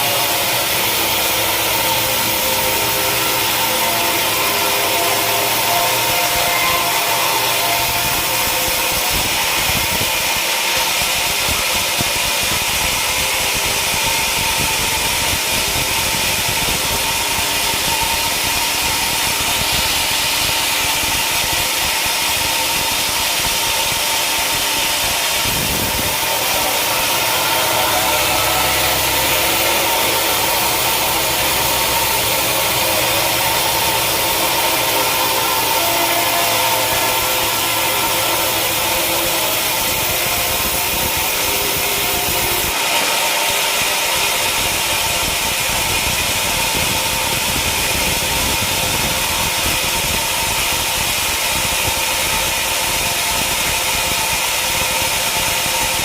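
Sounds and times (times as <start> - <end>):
sawmill machinery running: 0.0 - 56.0
deep hum: 25.0 - 42.8.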